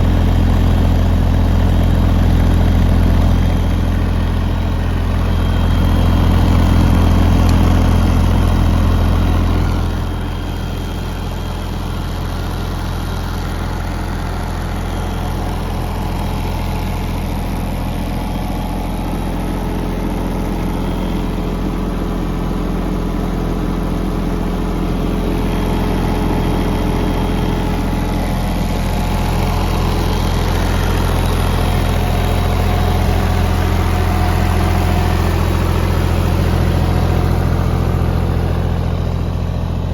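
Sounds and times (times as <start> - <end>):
excavator diesel engine running: 0.0 - 39.9.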